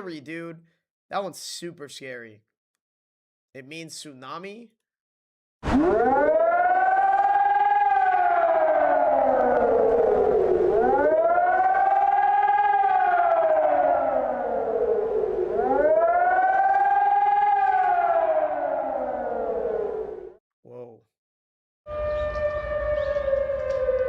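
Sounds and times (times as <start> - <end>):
warning siren wailing: 5.6 - 20.4, 21.9 - 24.0.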